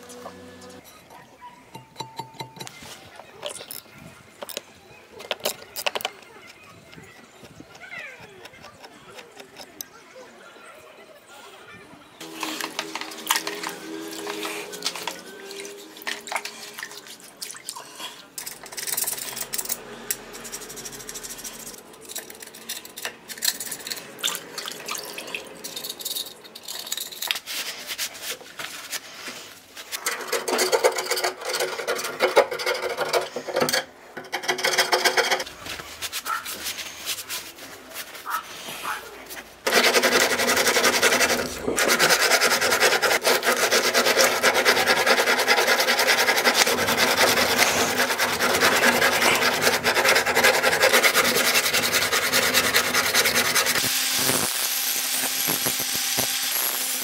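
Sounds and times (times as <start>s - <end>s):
metal scraped with abrasive tool: 12.2s - 17.1s, 18.3s - 27.9s, 30.0s - 35.6s, 39.6s - 54.5s.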